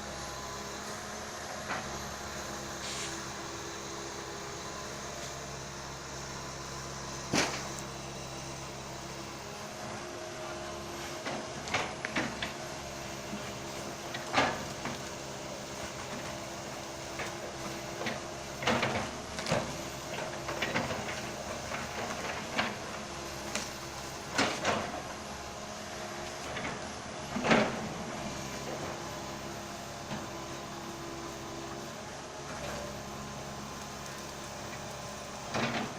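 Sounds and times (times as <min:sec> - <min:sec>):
excavator diesel engine running: 0:00.0 - 0:35.9
trees cracking and knocking: 0:06.8 - 0:08.1.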